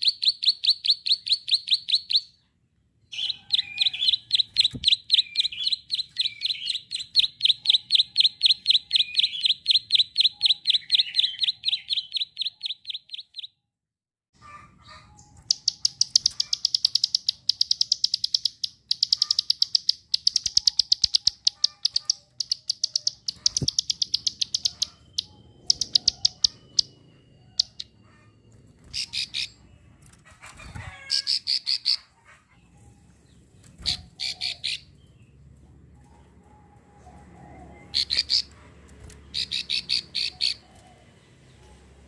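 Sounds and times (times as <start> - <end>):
bird rapid clicking call: 3.6 - 13.5, 15.4 - 27.0, 38.0 - 40.6.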